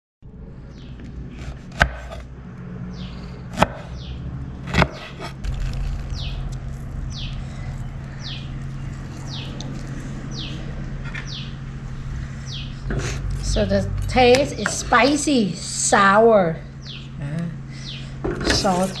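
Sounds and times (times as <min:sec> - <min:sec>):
steady low hum: 0:00.2 - 0:19.0
bird chirping: 0:00.7 - 0:01.0, 0:02.9 - 0:04.3, 0:05.5 - 0:15.3, 0:16.7 - 0:19.0.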